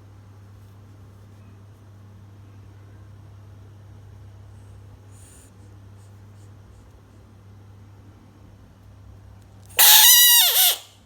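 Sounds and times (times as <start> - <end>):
faint hum: 0.0 - 11.0
high wailing cry: 9.8 - 10.9.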